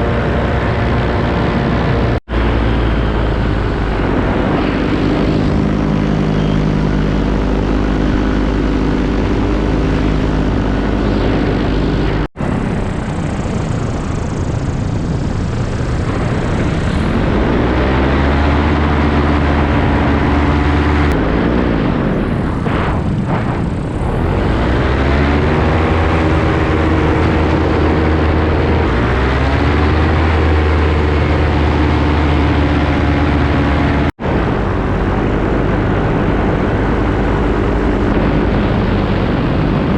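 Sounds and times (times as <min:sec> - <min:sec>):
paramotor engine and propeller drone: 0:00.0 - 0:39.9.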